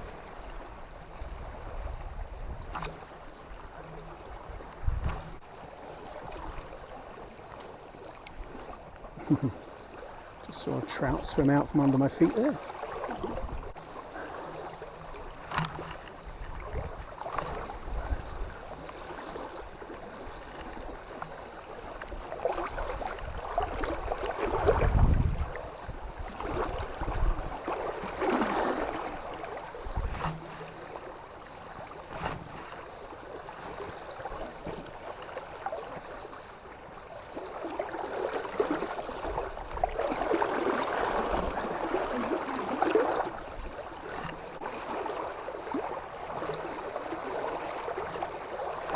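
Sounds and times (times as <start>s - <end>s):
river water splashing: 0.0s - 48.9s
wind buffeting microphone: 4.2s - 5.4s, 16.2s - 18.7s, 22.7s - 27.7s, 29.8s - 30.4s.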